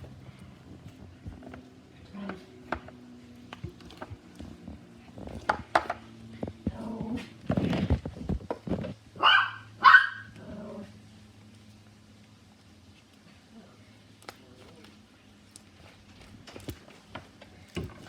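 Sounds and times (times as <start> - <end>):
dog barking: 9.2 - 10.3.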